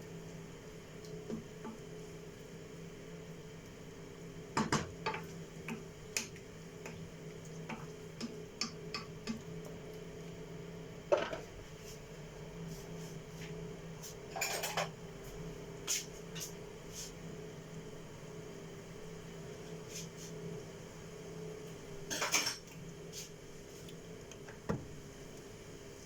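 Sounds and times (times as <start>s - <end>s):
utensils clinking against pots: 14.3s - 14.9s, 22.1s - 22.7s.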